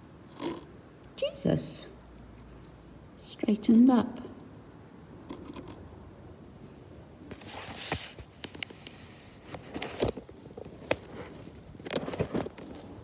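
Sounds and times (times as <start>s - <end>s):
figures rustling: 7.3s - 13.0s.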